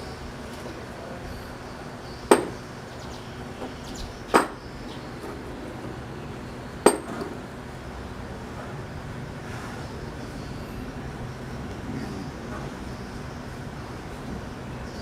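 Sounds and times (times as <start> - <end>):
steady background noise: 0.0 - 15.0
hammer blows on metal: 2.3 - 2.7.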